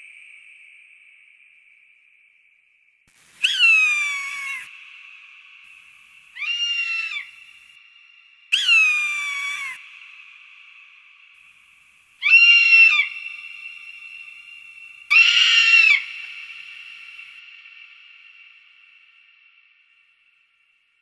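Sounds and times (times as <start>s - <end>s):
falcon screeching calls: 3.4s - 4.7s, 6.4s - 7.3s, 8.5s - 9.8s, 12.2s - 13.5s, 15.1s - 16.8s.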